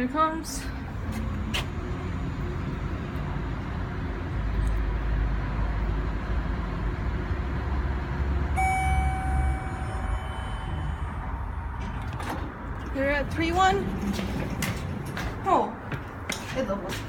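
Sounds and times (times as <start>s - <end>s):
steady electronic tone: 8.6s - 11.9s
elevator running rumble: 8.6s - 15.4s.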